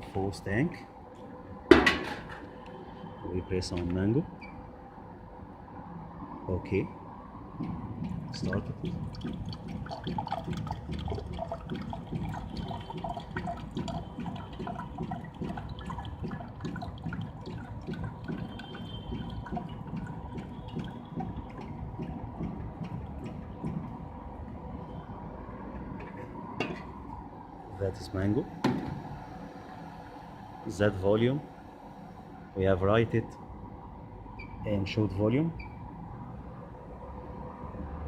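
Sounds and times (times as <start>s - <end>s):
vending machine gurgling liquid: 6.5s - 24.8s, 26.3s - 35.5s.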